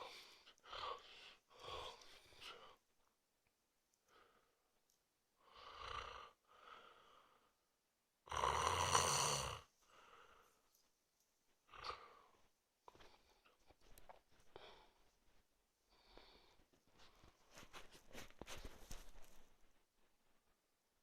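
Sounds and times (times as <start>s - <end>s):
soft breath: 0.0s - 2.9s, 9.8s - 10.9s, 11.7s - 19.8s
man snoring: 5.5s - 6.4s, 8.3s - 9.7s.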